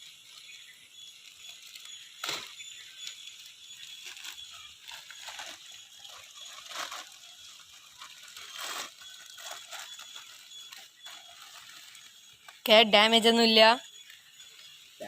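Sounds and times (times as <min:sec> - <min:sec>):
packaging rustling and crinkling: 0:01.2 - 0:12.7.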